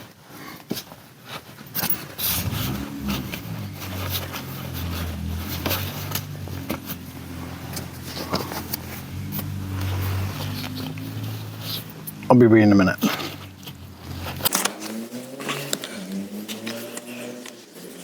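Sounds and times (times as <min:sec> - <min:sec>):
fabric rustling and scraping: 0:00.0 - 0:12.2, 0:13.0 - 0:18.0
steady low hum: 0:02.3 - 0:14.5.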